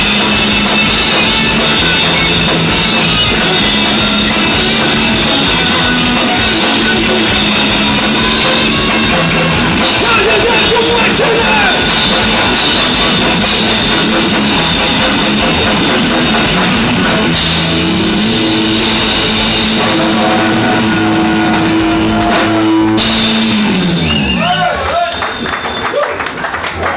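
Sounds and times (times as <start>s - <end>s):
rock band playing loud: 0.0s - 26.9s.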